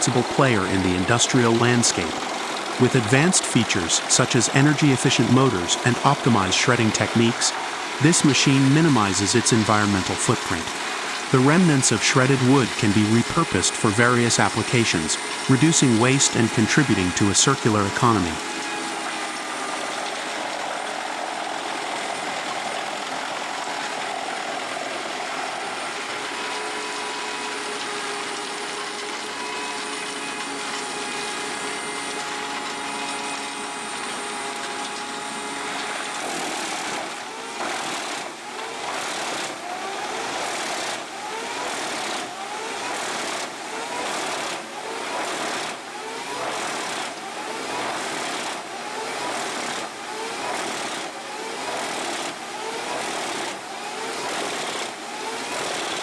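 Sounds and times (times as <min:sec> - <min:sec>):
wood shredder grinding: 0:01.5 - 0:02.8, 0:07.5 - 0:08.0, 0:10.0 - 0:11.7, 0:14.5 - 0:15.5, 0:18.2 - 0:56.0.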